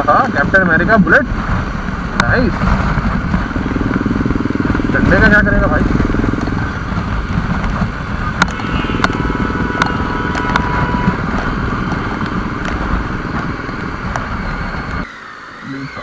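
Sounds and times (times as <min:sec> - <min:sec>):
motorcycle engine running: 0:00.0 - 0:15.1
wind and road noise: 0:00.0 - 0:16.0
sharp ticks: 0:03.4 - 0:15.1
thin high tone: 0:08.4 - 0:16.0.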